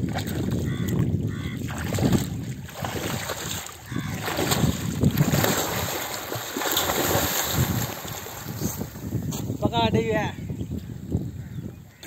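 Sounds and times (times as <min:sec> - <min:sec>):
water sloshing and splashing: 0:00.0 - 0:09.1
wind buffeting microphone: 0:00.0 - 0:12.0.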